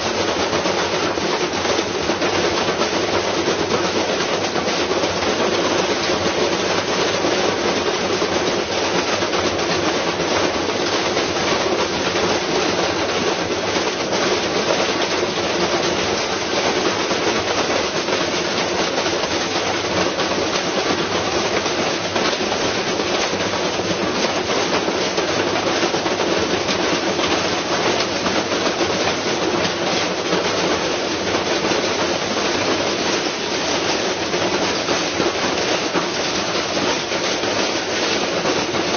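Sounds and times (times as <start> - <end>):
washing machine clattering: 0.0 - 38.9.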